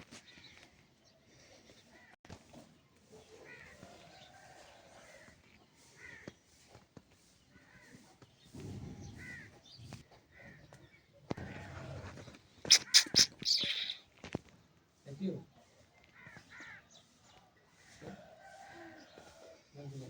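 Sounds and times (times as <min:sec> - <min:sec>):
crows cawing: 0:01.9 - 0:02.2, 0:03.4 - 0:03.9, 0:05.0 - 0:06.4, 0:07.6 - 0:08.0, 0:09.0 - 0:09.6, 0:10.3 - 0:10.8, 0:16.1 - 0:17.1.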